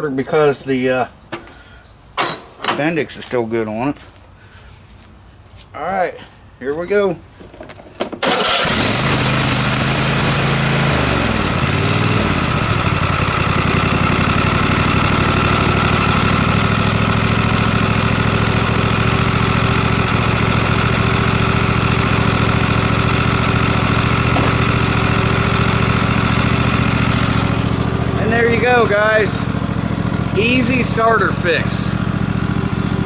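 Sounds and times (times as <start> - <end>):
lawn tractor engine starting: 7.5 - 33.0.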